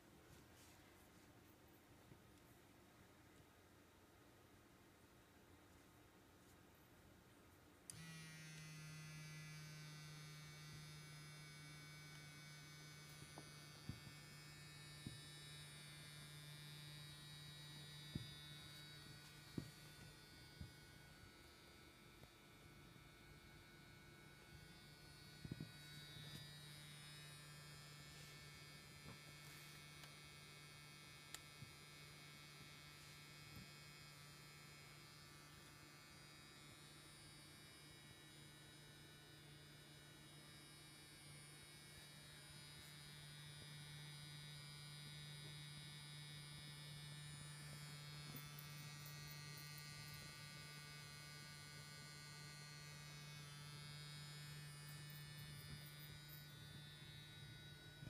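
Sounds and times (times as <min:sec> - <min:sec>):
faint electric hum: 0:00.0 - 0:58.0.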